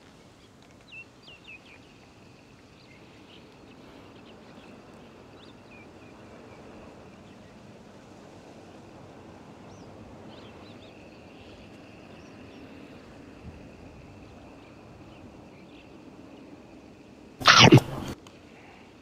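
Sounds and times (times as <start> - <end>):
bump close to microphone: 17.4 - 18.2.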